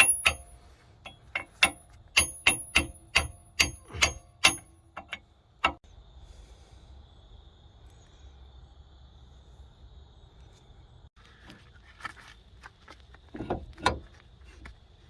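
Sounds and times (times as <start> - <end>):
hammer striking metal: 0.0 - 5.8.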